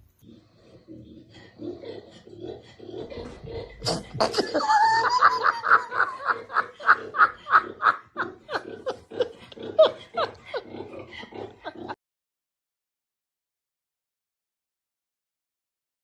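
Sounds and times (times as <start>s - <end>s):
high-pitched laughter: 3.2s - 12.0s.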